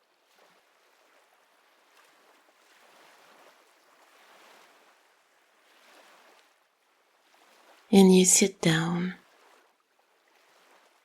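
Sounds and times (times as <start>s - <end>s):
narration voice: 8.0s - 9.2s.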